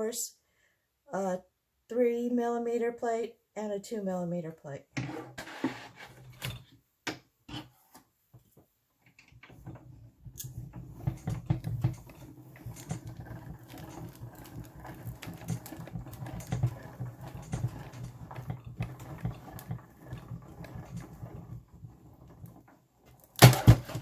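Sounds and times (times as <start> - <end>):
clicks and creaks: 9.0 - 23.4
hand-cranked machine rumbling: 9.4 - 24.0.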